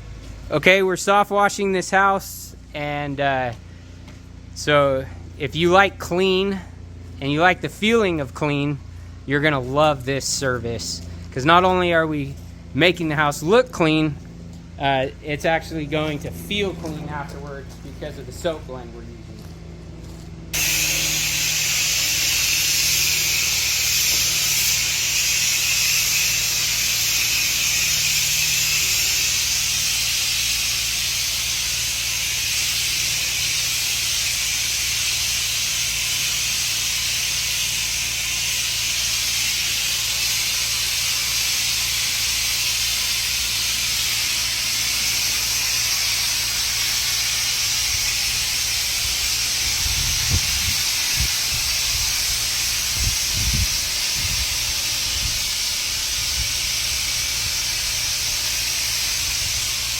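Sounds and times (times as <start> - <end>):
motor humming: 12.4 - 59.9
spray hissing: 20.6 - 59.9.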